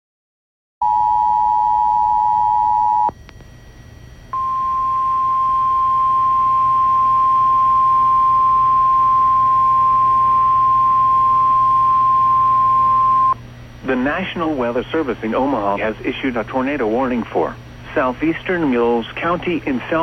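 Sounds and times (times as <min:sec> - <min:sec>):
steady warning alarm tone: 0:04.3 - 0:13.4
two-tone attention signal: 0:04.4 - 0:13.4.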